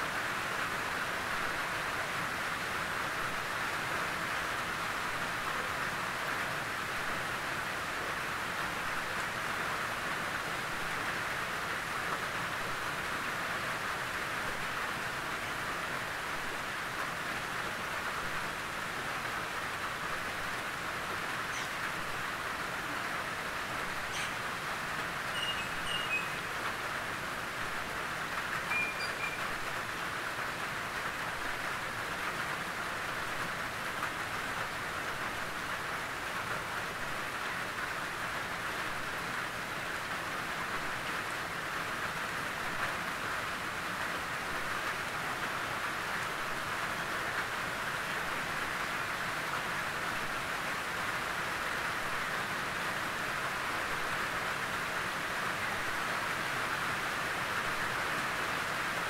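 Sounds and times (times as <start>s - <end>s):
rain drumming on a tin roof: 0.0s - 59.0s.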